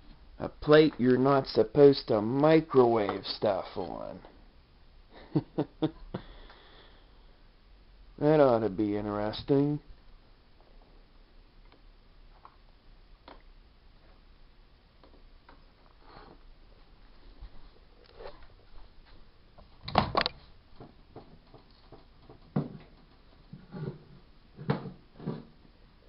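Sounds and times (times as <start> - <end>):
handling knocks and clunks: 19.8 - 25.6.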